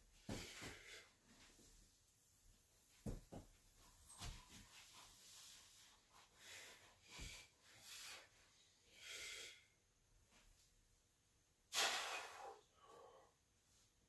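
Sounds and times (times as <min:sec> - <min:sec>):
sharp straining breaths: 0:11.7 - 0:13.4.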